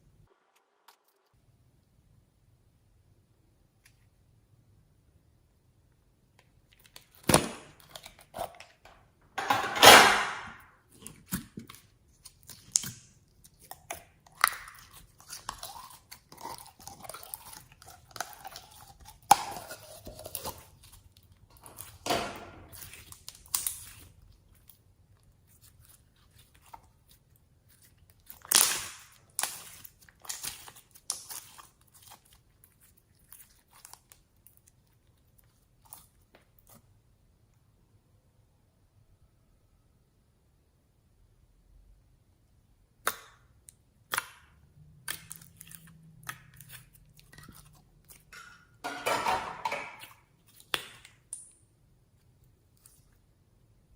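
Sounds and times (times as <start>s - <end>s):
slime squishing: 10.8s - 37.5s, 42.9s - 48.9s, 49.7s - 53.9s.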